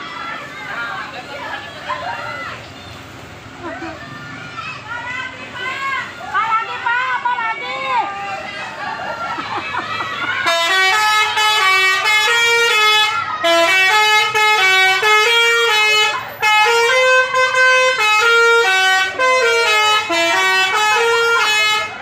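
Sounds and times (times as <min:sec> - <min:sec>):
musical bus air horn: 0:10.4 - 0:22.0.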